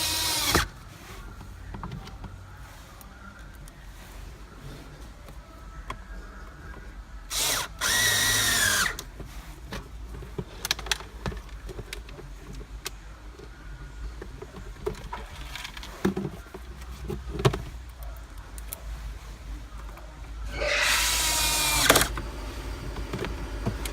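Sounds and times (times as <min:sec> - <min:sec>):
cordless drill whirring: 0:00.0 - 0:00.7, 0:07.3 - 0:09.0, 0:20.5 - 0:23.9.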